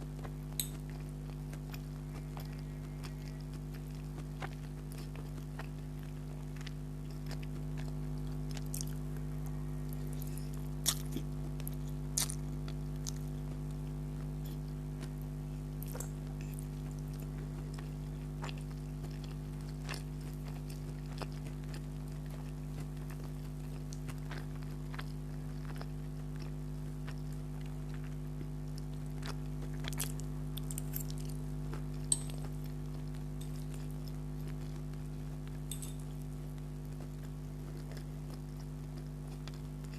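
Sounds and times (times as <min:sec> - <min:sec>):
person chewing food: 0:00.0 - 0:39.9
steady low hum: 0:00.0 - 0:39.9.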